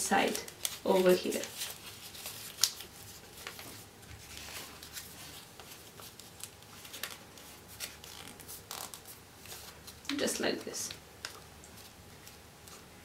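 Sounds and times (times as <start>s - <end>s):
paper rustling and crinkling: 0.0s - 10.2s.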